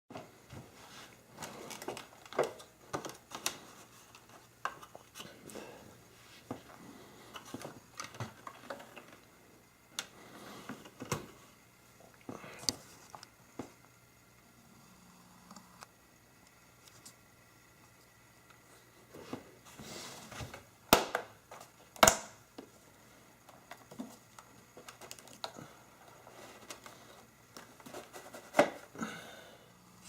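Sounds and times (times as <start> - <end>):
plastic parts clicking and knocking: 1.4 - 5.0, 7.3 - 9.3, 23.5 - 28.9.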